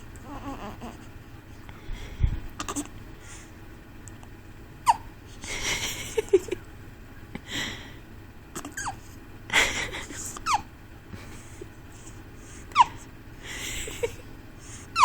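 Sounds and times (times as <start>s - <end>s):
breathy puffs: 0.2s - 3.6s
baby hiccuping: 2.6s - 2.9s, 4.8s - 5.1s, 8.5s - 9.0s.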